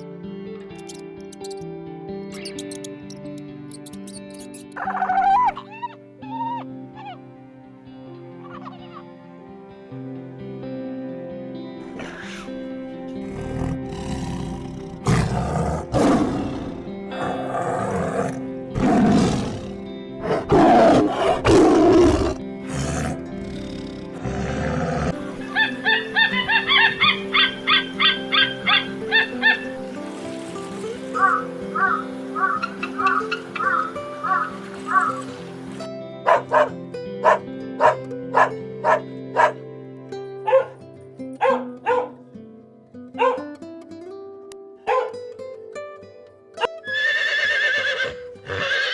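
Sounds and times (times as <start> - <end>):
soft background music: 0.0 - 48.9
big cat roaring: 13.2 - 26.1
dog barking: 36.3 - 39.6, 40.4 - 40.8, 41.4 - 42.2, 43.2 - 43.5, 44.9 - 45.2.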